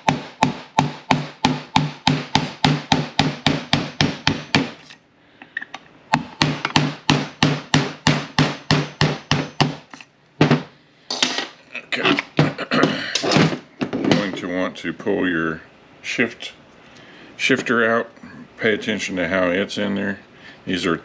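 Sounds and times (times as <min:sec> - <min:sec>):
hammer striking metal punch: 0:00.0 - 0:04.8, 0:06.1 - 0:11.4.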